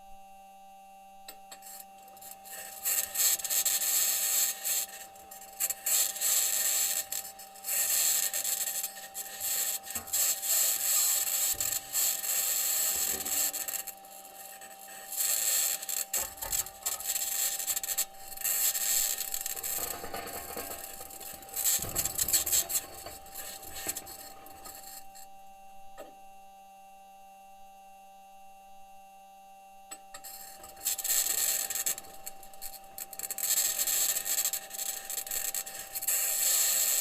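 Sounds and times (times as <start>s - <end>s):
faint steady tone: 0.0s - 37.0s
wheels scraping and grinding: 18.5s - 25.0s.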